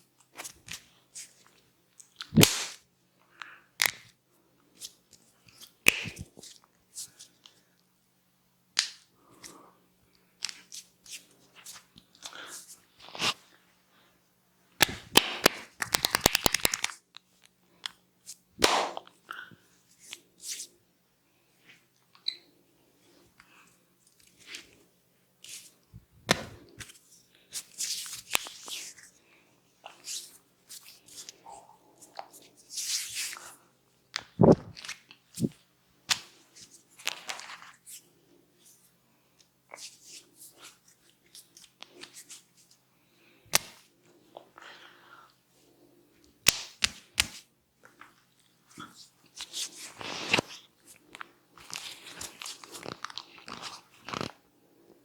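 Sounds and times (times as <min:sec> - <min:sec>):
sharp cracks and clicks: 0:14.8 - 0:17.0.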